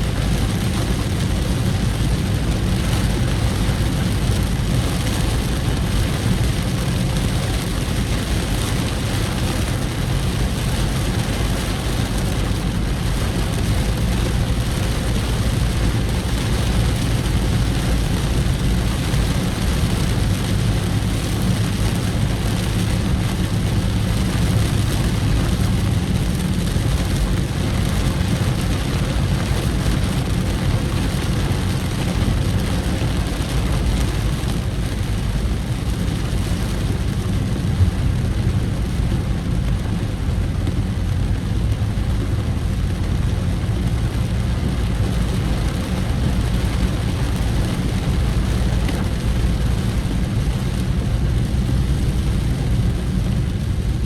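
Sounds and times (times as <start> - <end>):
low engine hum: 0.0 - 54.0.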